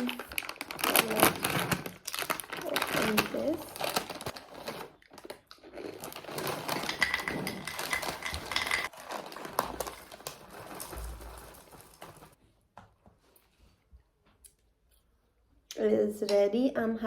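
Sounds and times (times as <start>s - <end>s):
cereal and spoon clinking in bowl: 5.7s - 12.3s.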